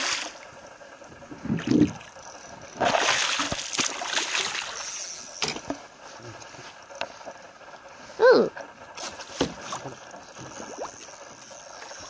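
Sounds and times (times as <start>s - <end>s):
fish splashing in water: 2.8s - 5.4s.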